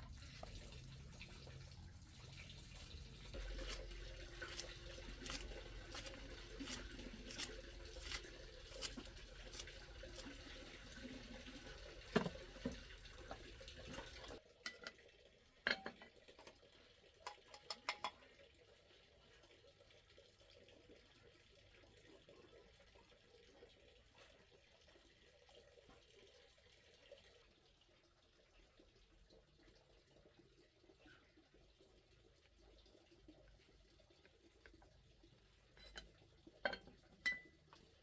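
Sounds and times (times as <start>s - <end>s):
water sounds: 0.0s - 14.8s
dishes and utensils clinking: 17.3s - 18.2s, 35.8s - 37.6s.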